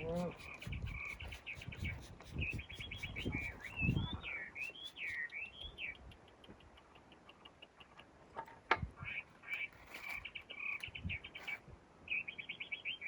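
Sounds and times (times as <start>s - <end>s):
small bird chirping and whistling: 0.1s - 6.1s.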